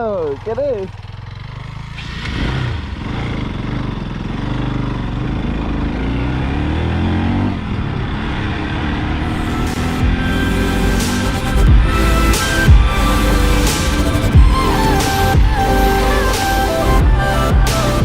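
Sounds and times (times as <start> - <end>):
motorcycle engine revving: 0.0 - 18.0
steady rushing noise: 9.2 - 18.0.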